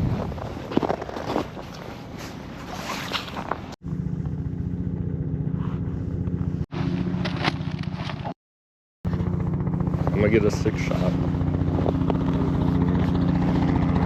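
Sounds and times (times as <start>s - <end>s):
small engine running: 3.8s - 8.4s, 9.1s - 14.0s.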